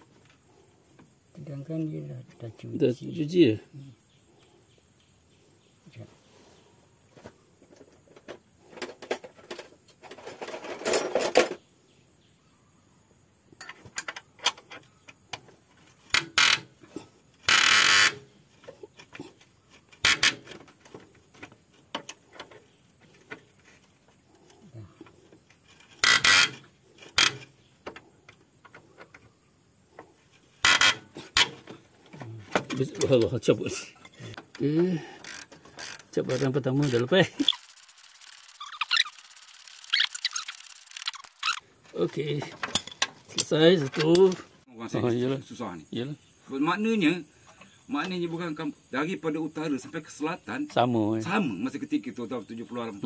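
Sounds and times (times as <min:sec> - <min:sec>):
metal scraping and knocking: 0:07.7 - 0:11.6, 0:42.4 - 0:44.6.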